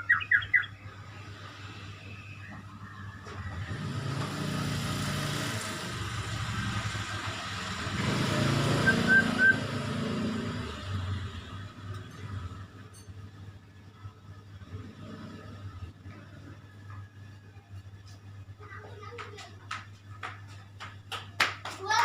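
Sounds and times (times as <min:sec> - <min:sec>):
bird chirps: 0:00.0 - 0:01.2, 0:08.8 - 0:09.8
vehicle passing by: 0:01.0 - 0:12.8.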